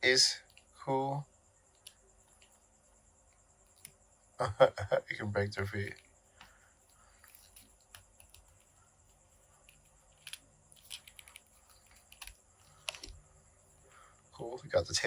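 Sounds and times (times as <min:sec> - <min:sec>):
plastic figures clicking: 0:09.6 - 0:13.2.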